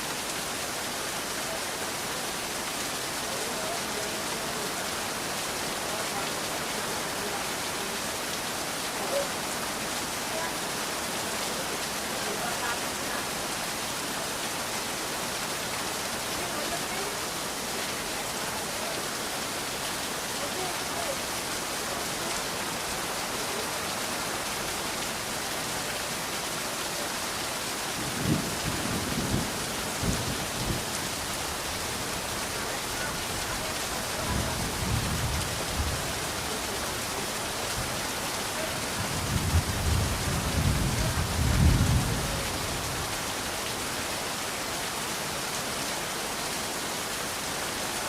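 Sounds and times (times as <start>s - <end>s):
steady rain hiss: 0.0s - 48.0s.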